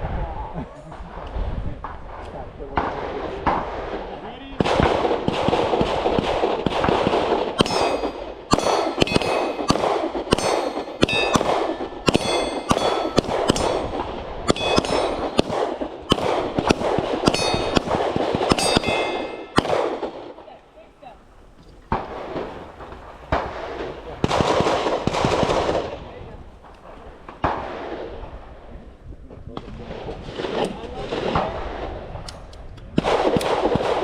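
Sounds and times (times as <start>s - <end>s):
pistol shots: 4.6s - 28.3s, 33.0s - 34.0s
high metallic ring: 7.6s - 13.9s, 14.5s - 15.4s, 17.2s - 19.8s.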